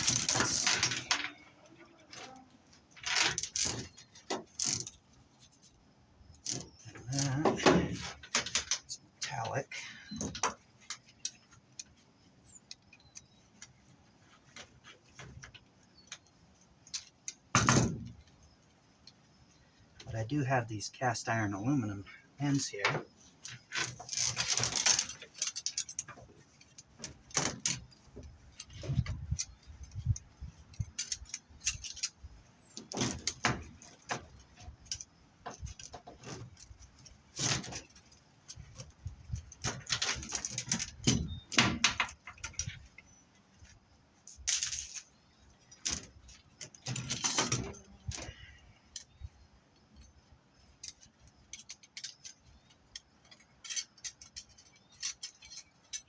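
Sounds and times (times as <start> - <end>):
metal cable clinking and rattling: 0.0 - 9.5, 21.7 - 56.0.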